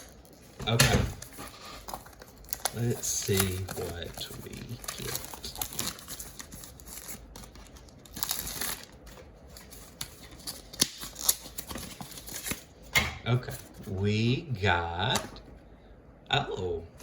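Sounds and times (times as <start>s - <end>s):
plastic packaging crinkling: 0.0s - 12.9s.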